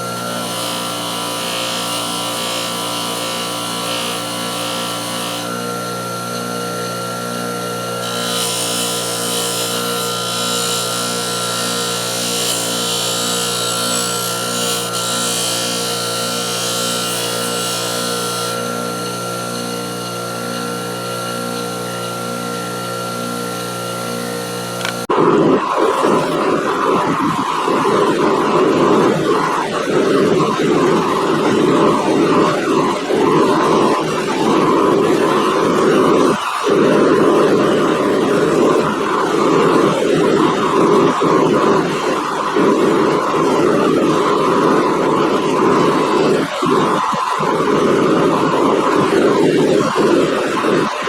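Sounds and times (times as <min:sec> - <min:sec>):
electric polishing motor running: 0:00.0 - 0:51.0
metal grinding hiss on wheel: 0:08.1 - 0:18.6.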